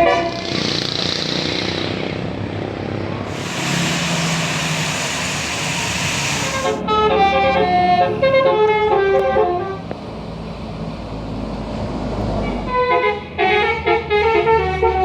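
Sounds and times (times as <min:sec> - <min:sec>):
bus engine running: 0:00.0 - 0:08.3, 0:09.5 - 0:13.7
road noise: 0:00.0 - 0:15.0
broad rushing hiss: 0:03.3 - 0:06.8.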